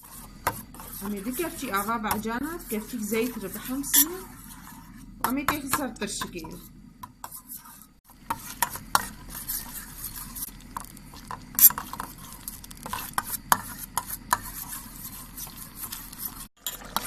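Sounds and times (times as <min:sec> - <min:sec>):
utensil scraping pan: 0:00.0 - 0:17.0
eggplant sizzling in oil: 0:07.5 - 0:17.0.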